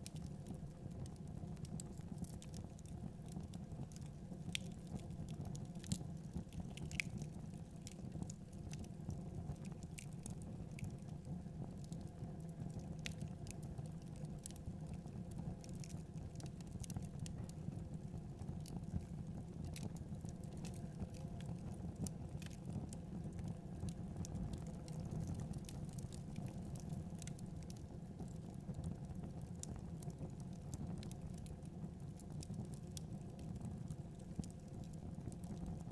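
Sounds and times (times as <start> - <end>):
low rumble of burning: 0.0 - 35.9
wood fire crackling: 0.0 - 35.9.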